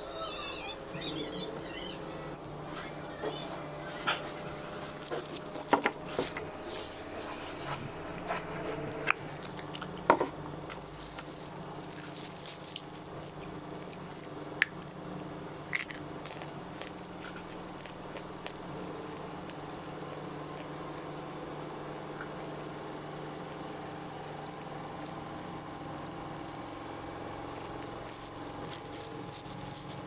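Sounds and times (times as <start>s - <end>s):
chalk crunching in teeth: 4.0s - 10.0s, 10.7s - 15.0s, 15.6s - 30.0s
chewing ticks: 10.8s - 30.0s.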